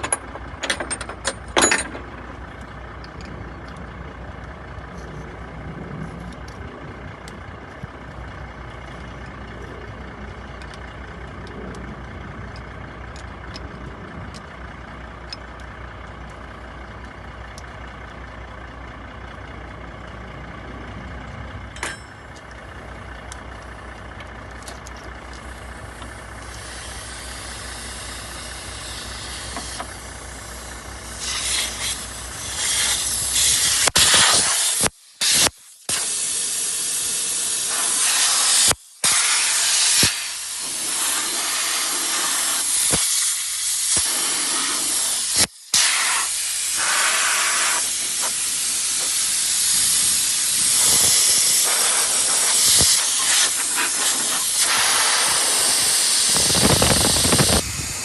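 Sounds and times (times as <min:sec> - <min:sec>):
truck engine idling: 0:00.0 - 0:34.1, 0:34.8 - 0:58.0
compressed air hissing: 0:26.4 - 0:58.0.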